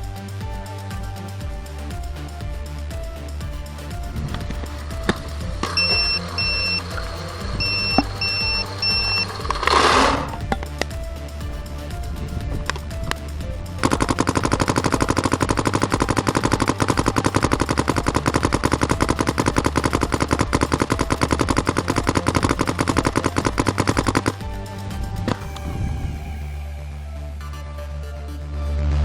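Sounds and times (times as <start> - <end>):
background music: 0.0 - 29.0
paintball marker rapid firing: 13.8 - 24.4.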